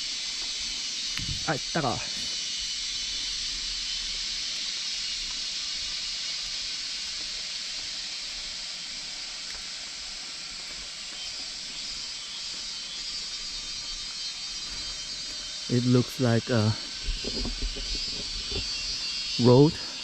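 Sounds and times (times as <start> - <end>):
insect chorus: 0.0 - 20.0.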